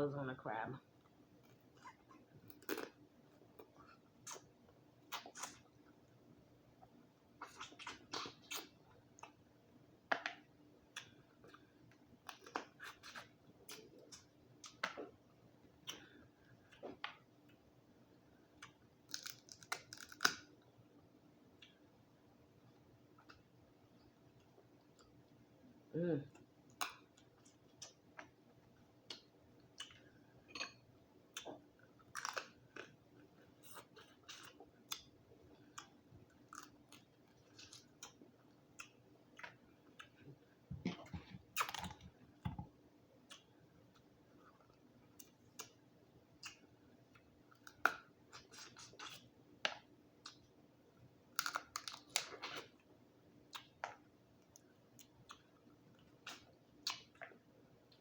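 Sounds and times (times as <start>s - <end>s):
person chewing: 1.4s - 5.7s, 7.4s - 9.4s, 26.3s - 42.1s, 43.2s - 49.3s
crab shell crunching: 19.1s - 20.5s.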